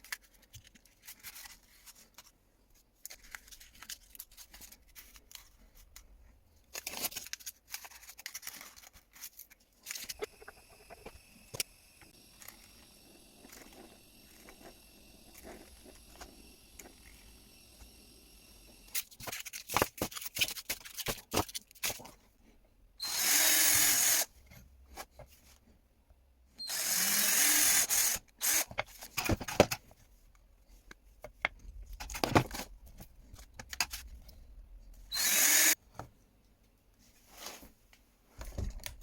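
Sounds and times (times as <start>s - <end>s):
paper crinkling and rustling: 0.0s - 10.2s, 19.0s - 22.2s.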